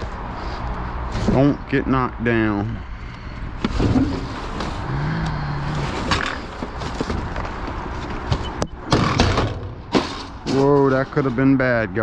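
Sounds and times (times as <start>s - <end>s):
scrap knocking and scraping: 3.6s - 4.9s, 5.7s - 11.4s.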